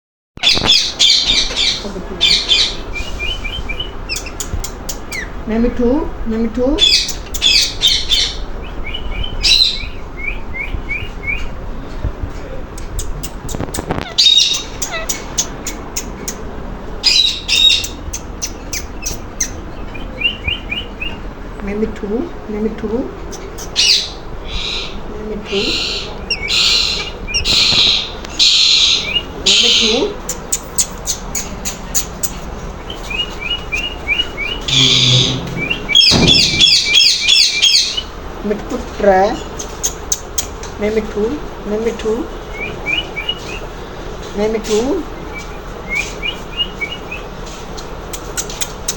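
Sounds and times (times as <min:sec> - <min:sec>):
parrot chirping: 0:00.4 - 0:05.4, 0:06.8 - 0:11.5, 0:13.0 - 0:21.2, 0:23.3 - 0:38.2
parrot screeching: 0:14.0 - 0:15.2, 0:34.7 - 0:37.9.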